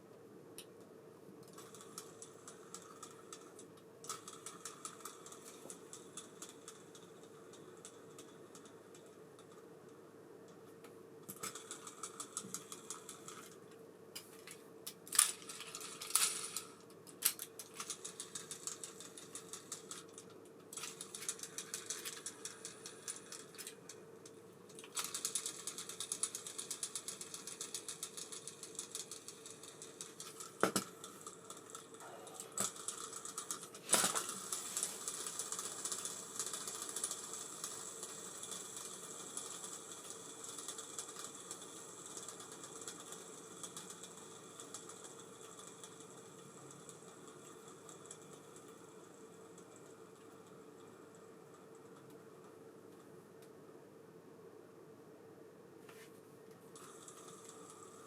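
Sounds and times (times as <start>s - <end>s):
faint steady hum: 0.0s - 58.0s
fishing reel ticking and clicking: 1.5s - 9.6s, 11.3s - 13.6s, 15.1s - 51.2s.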